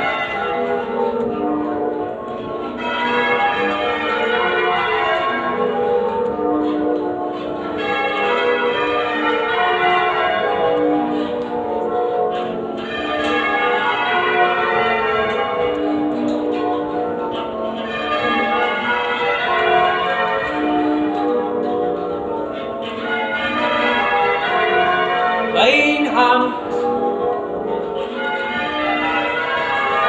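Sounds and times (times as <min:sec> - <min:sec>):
church bells change ringing: 0:00.0 - 0:30.0.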